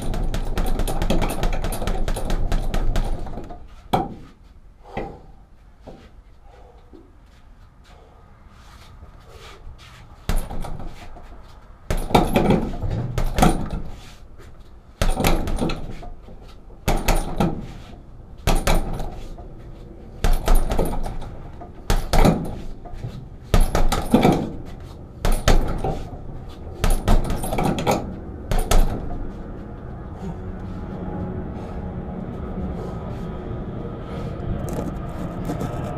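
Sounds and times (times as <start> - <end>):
punches thudding on heavy bag: 0.0 - 4.3, 10.3 - 11.1, 11.9 - 14.0, 15.0 - 16.2, 16.8 - 17.8, 18.4 - 19.4, 20.2 - 26.1, 26.8 - 29.3
steady low noise: 17.9 - 35.9.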